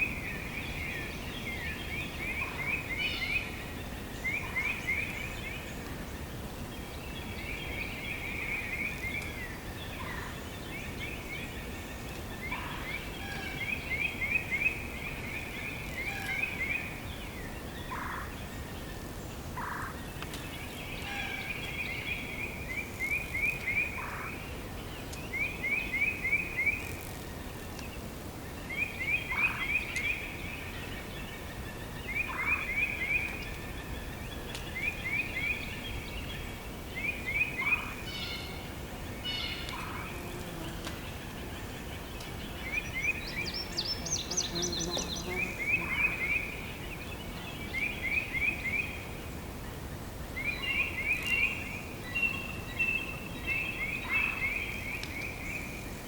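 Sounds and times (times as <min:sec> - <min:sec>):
forest background hush: 0:00.0 - 0:56.0
songbird trilling: 0:39.2 - 0:49.0.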